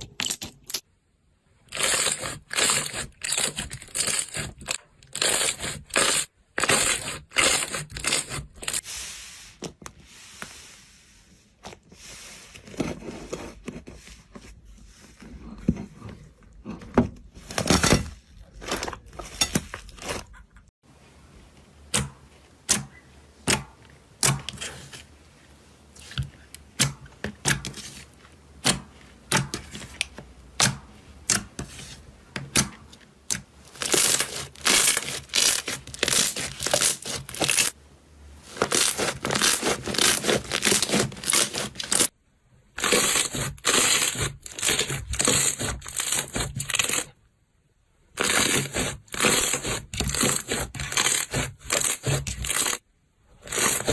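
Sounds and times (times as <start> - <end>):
slime crackling: 33.7 - 37.8, 38.4 - 42.1.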